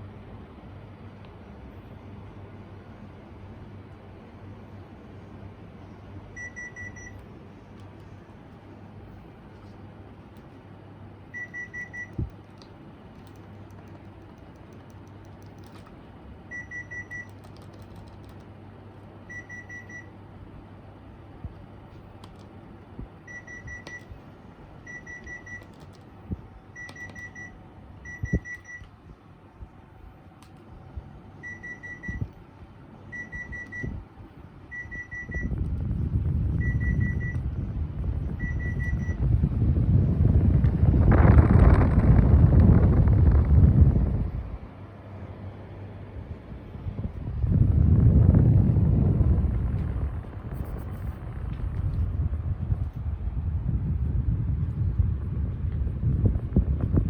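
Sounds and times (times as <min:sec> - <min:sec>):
low rushing air noise: 0:00.0 - 0:57.0
low hum: 0:21.4 - 0:57.0.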